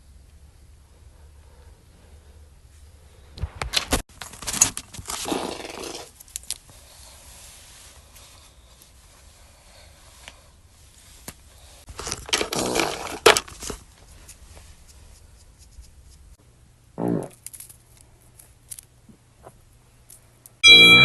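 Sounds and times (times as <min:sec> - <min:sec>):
person farting: 0:17.0 - 0:17.4.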